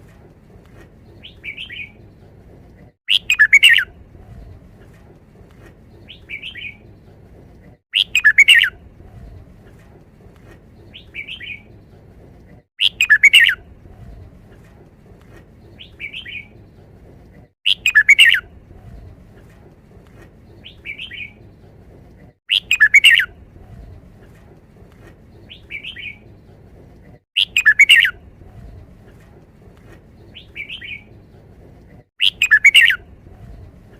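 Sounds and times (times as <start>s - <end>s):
bird singing song phrase: 32.2s - 33.6s.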